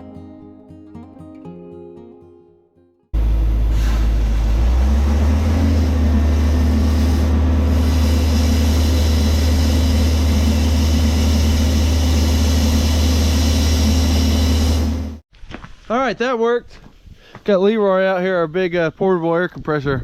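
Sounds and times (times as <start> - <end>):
air compressor engine drone: 3.2 - 15.2
rush of compressed air: 3.4 - 15.2.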